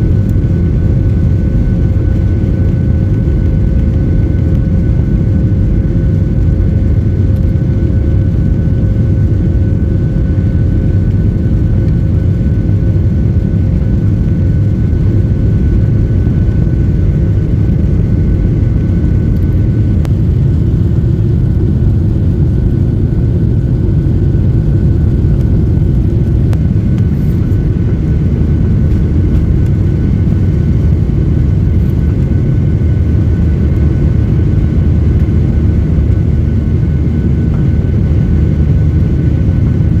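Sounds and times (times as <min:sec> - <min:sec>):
jet engine cabin roar: 0:00.0 - 0:40.0.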